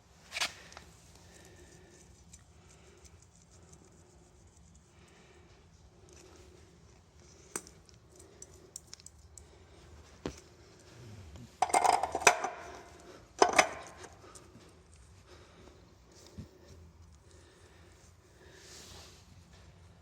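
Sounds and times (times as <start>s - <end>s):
metallic clinking and rattling: 11.6s - 14.2s.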